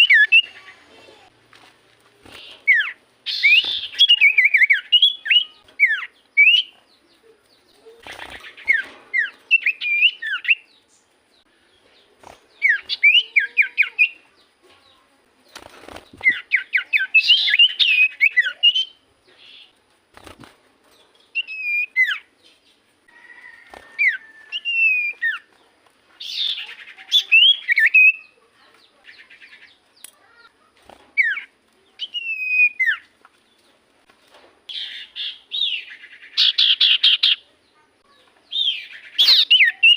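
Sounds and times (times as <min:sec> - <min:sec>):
bird whistling and chattering: 0:00.0 - 0:00.6, 0:02.4 - 0:06.8, 0:07.9 - 0:10.7, 0:12.6 - 0:14.2, 0:16.2 - 0:19.7, 0:21.4 - 0:22.3, 0:24.0 - 0:25.5, 0:26.2 - 0:28.4, 0:31.2 - 0:33.1, 0:34.7 - 0:37.4, 0:38.5 - 0:39.9.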